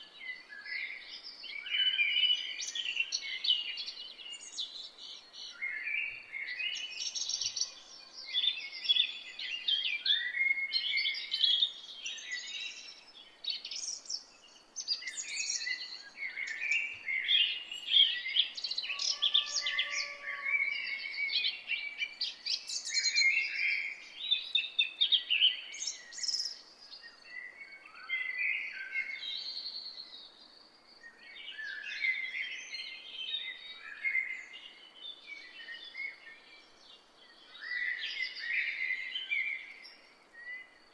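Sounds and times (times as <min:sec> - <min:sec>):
faint background hiss: 0:00.0 - 0:18.9
songbirds chirping: 0:00.0 - 0:40.9.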